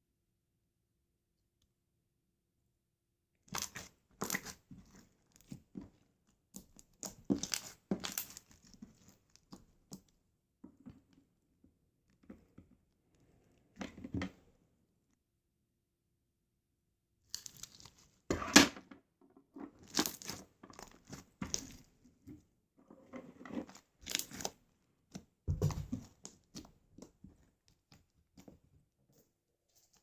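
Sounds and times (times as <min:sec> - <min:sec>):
slime squeezed and stretched: 0:03.5 - 0:05.0, 0:06.8 - 0:09.2, 0:19.8 - 0:21.9, 0:23.6 - 0:24.6.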